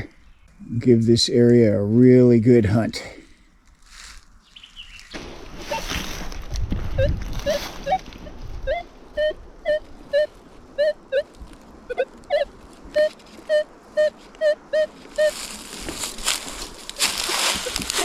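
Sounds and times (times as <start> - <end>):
rustling: 3.6 - 18.0
animal chirping calls: 7.0 - 11.3, 11.9 - 15.5, 17.3 - 18.0.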